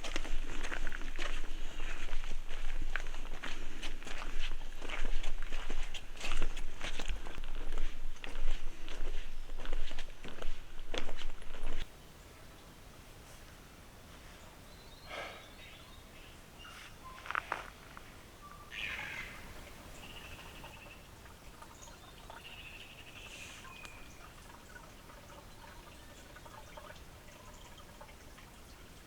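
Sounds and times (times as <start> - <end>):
faint bird calls: 14.3 - 24.3.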